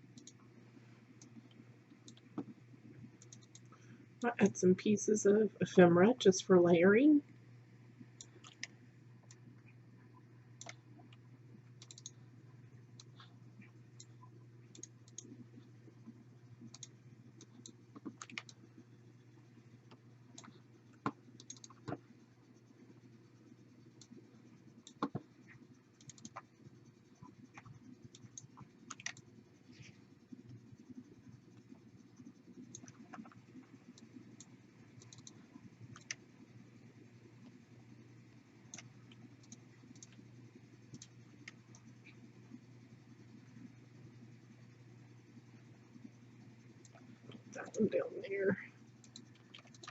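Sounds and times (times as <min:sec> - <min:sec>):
low steady hum: 0:00.0 - 0:49.9
mouse and keyboard clicking: 0:00.1 - 0:00.4, 0:01.2 - 0:02.6, 0:03.2 - 0:03.8, 0:08.2 - 0:09.4, 0:10.6 - 0:11.2, 0:11.8 - 0:12.2, 0:14.0 - 0:15.4, 0:16.6 - 0:18.6, 0:19.9 - 0:22.0, 0:24.8 - 0:25.3, 0:26.0 - 0:26.5, 0:27.5 - 0:29.3, 0:32.6 - 0:36.2, 0:38.7 - 0:40.3, 0:40.9 - 0:42.2, 0:49.0 - 0:49.9.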